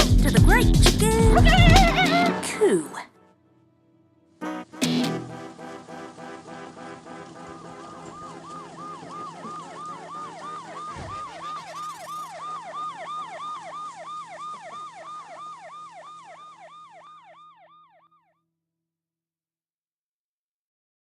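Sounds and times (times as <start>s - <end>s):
yelping siren: 1.2s - 2.5s, 5.9s - 18.4s
low thump: 10.9s - 11.3s.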